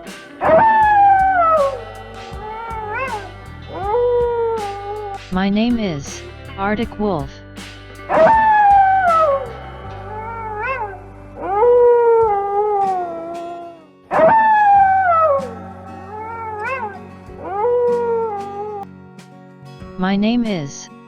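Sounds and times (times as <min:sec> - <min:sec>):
background music: 0:00.0 - 0:21.0.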